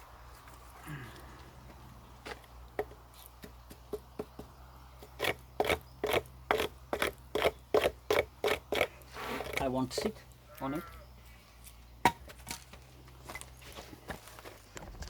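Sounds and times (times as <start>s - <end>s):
rasping strokes against wood: 2.8s - 10.2s.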